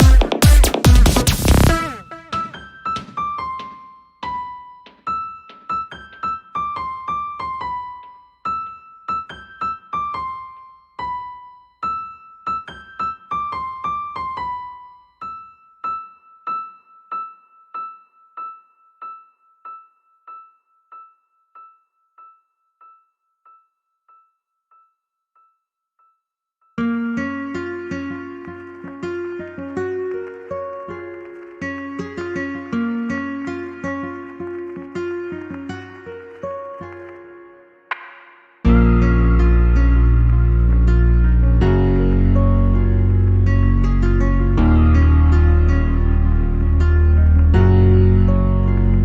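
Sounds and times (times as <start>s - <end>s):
piano melody: 0.0s - 23.0s, 26.8s - 38.0s, 38.6s - 49.0s
repeated high piano note: 1.7s - 3.6s.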